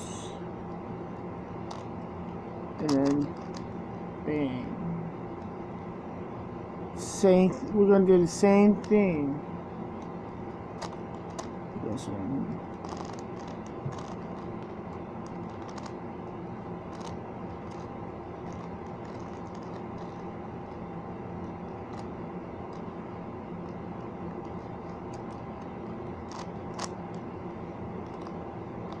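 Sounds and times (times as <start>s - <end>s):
background hum: 0.0s - 29.0s
puzzle cube plastic clicks: 2.8s - 3.7s, 12.8s - 16.0s, 16.9s - 20.3s, 24.0s - 27.2s.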